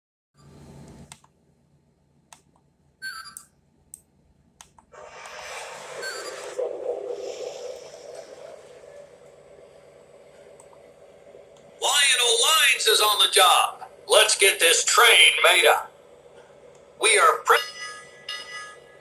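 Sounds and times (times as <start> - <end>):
steady hissing rumble: 4.2 - 17.6.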